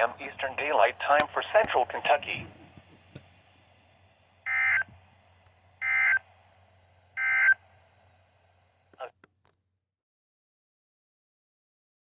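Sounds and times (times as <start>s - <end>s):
digital data tone bursts: 4.5s - 4.9s, 5.8s - 6.2s, 7.2s - 7.6s.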